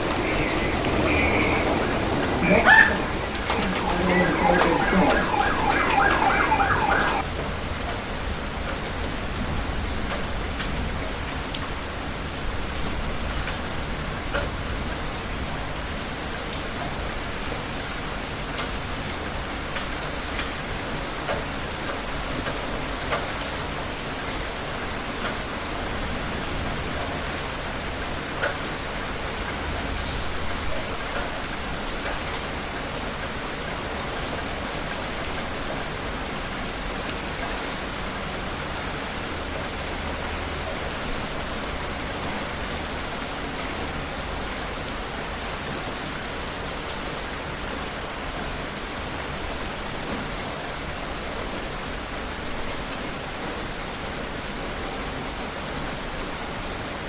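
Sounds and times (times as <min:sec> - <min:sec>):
heavy rain: 0:00.0 - 0:57.0.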